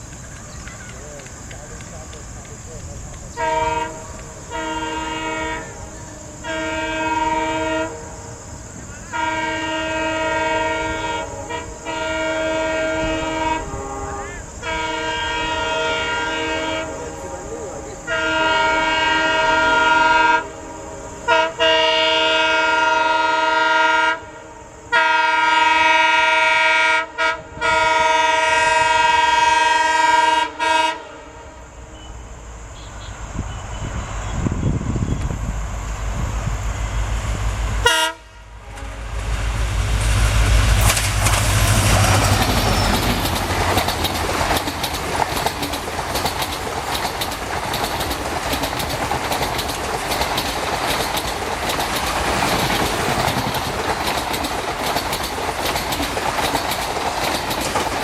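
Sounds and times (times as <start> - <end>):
diesel locomotive horn blasts: 3.3 - 44.6.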